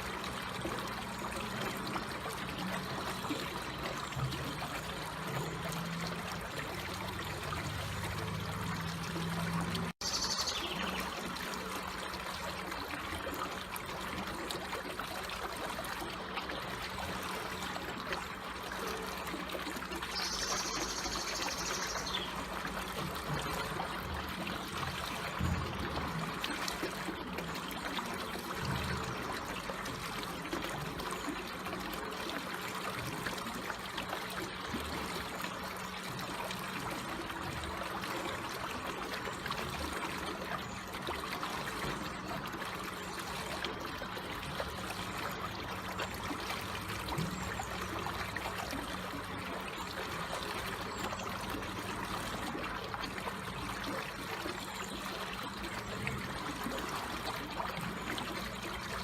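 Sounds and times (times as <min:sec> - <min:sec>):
water trickling: 0:00.0 - 0:59.0.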